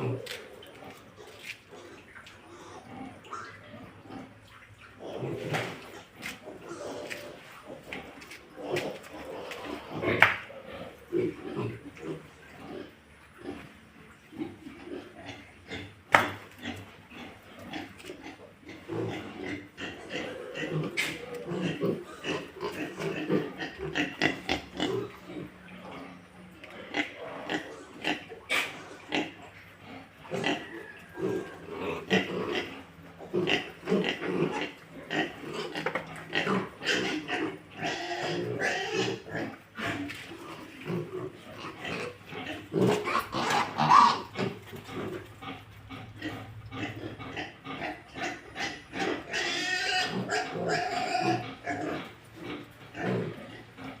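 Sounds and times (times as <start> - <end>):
pigs grunting: 0.0 - 54.0
pigs squealing: 0.0 - 54.0.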